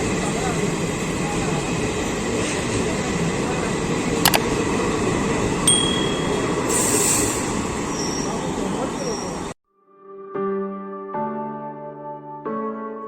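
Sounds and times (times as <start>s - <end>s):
train rumbling on rails: 0.0s - 9.6s
sharp clicks: 4.3s - 4.5s
high ringing tone: 5.7s - 7.0s.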